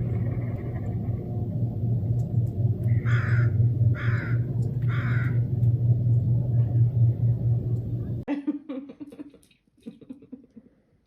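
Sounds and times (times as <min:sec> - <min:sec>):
steady low rumble: 0:00.0 - 0:08.3
crow cawing: 0:03.0 - 0:05.4.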